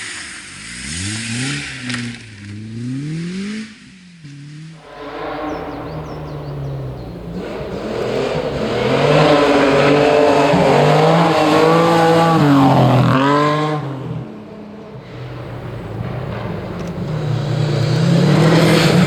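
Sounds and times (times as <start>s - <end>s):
rally car engine revving past: 4.8s - 19.0s.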